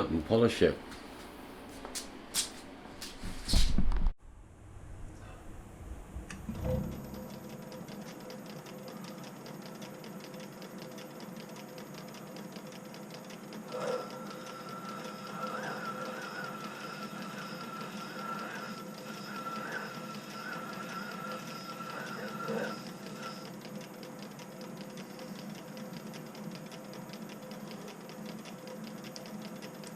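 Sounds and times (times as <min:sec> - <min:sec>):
wavering whine: 0:04.2 - 0:09.1, 0:13.6 - 0:23.7
lathe motor hum and whirr: 0:05.6 - 0:29.9
metal scrape: 0:13.7 - 0:23.4.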